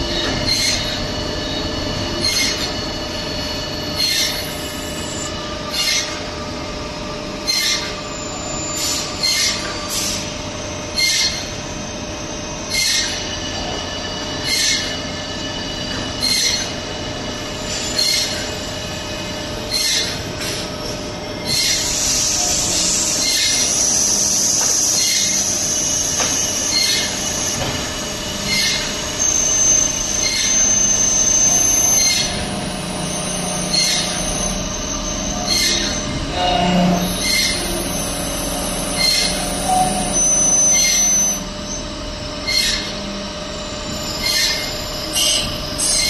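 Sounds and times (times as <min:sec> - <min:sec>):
machine metallic whine: 0:00.0 - 0:46.0.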